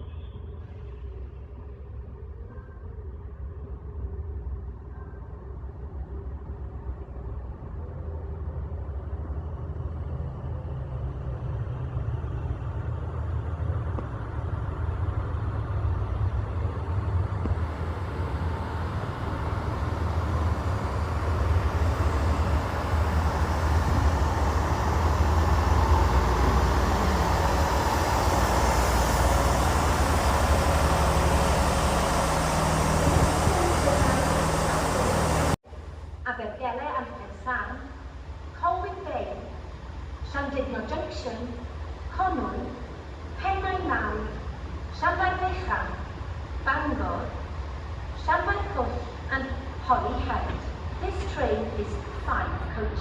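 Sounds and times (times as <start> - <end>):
diesel train rumble: 0.0 - 53.0
rush of higher noise: 14.2 - 35.6.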